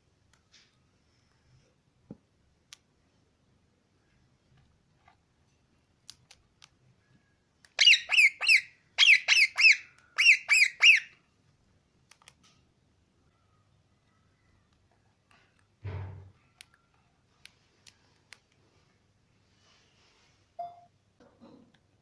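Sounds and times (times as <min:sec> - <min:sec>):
parrot squawking: 0:07.8 - 0:11.2.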